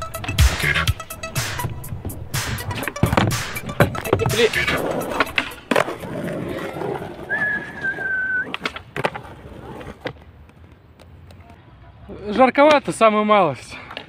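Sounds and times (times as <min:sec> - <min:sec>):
skateboard clacking on ground: 0:00.0 - 0:11.6
skateboard wheels rolling on concrete: 0:00.0 - 0:14.0
thin high whistling tone: 0:07.3 - 0:08.5.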